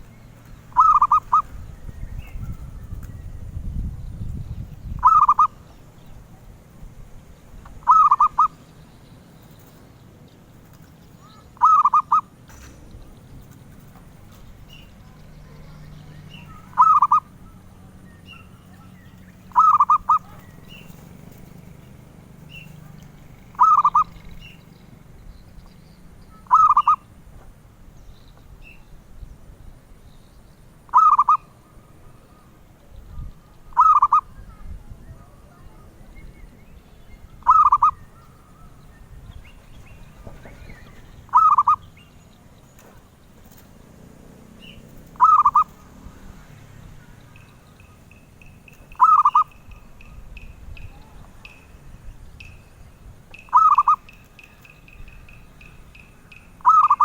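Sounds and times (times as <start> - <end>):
dove cooing: 0.4 - 1.7, 5.0 - 5.8, 7.8 - 8.7, 10.7 - 12.4, 13.4 - 24.6, 26.3 - 27.1, 30.9 - 32.6, 33.6 - 34.6, 37.3 - 38.9, 39.6 - 42.0, 44.5 - 45.9, 47.0 - 50.3, 53.4 - 57.0.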